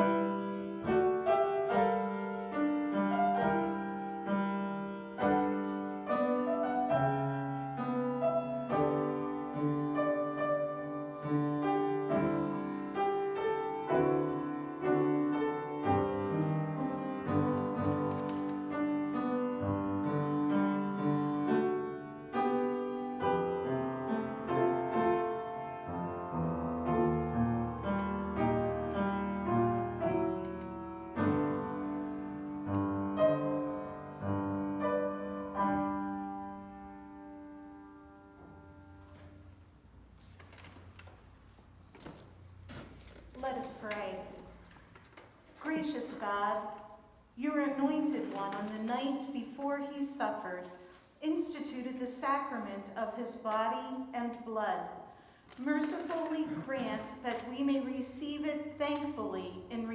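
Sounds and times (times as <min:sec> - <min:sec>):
solo piano playing: 0:00.0 - 0:40.2.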